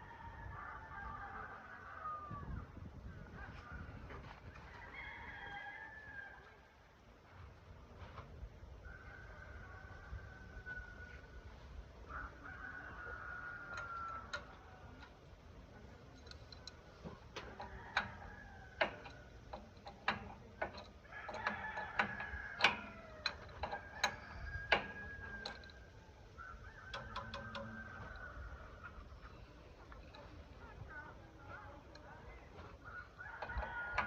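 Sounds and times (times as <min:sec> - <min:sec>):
rooster crowing: 0:00.0 - 0:02.6, 0:04.5 - 0:06.7, 0:08.8 - 0:11.4, 0:12.1 - 0:15.0, 0:17.4 - 0:30.3, 0:32.8 - 0:34.0
sharp clicks and knocks: 0:16.0 - 0:26.0, 0:26.8 - 0:34.0.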